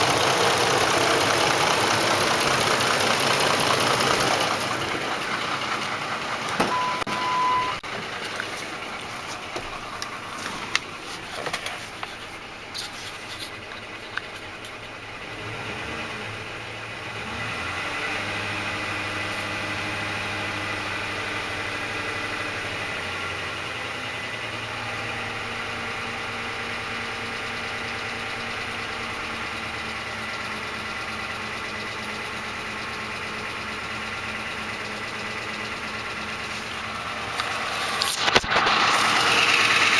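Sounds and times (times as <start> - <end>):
engine starting and idling: 0.0 - 39.9
short beep: 6.7 - 7.8.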